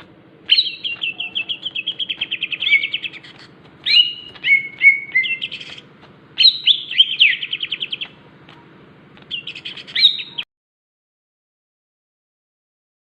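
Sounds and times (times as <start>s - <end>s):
bird singing trilled chattering song: 0.4s - 10.4s.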